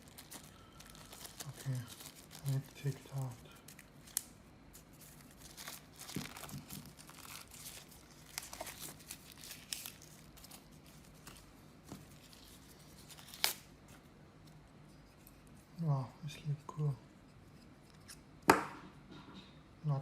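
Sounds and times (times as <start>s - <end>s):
packaging crinkling and tearing: 0.0s - 13.7s.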